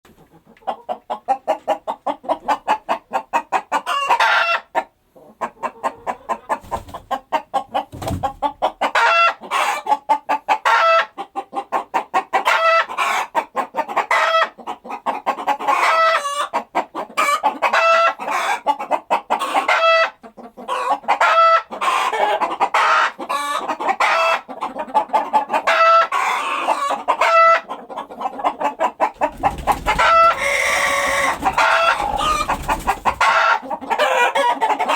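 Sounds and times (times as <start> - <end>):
chicken pitched calls: 0.1 - 34.9
chickens clucking: 0.1 - 34.9.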